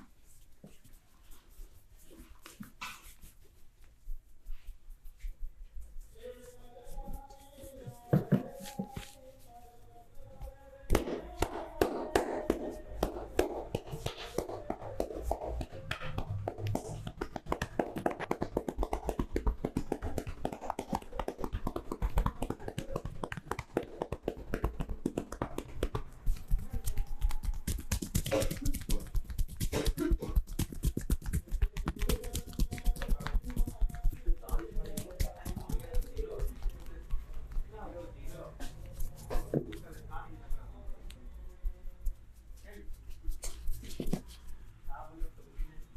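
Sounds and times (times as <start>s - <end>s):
hands tapping and chopping on body: 10.9s - 36.7s.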